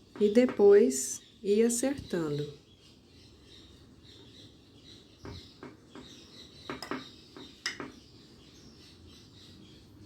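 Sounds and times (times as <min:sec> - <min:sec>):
faint bird chirps: 0:00.0 - 0:10.0
spoon knocking against bowl: 0:06.7 - 0:08.0.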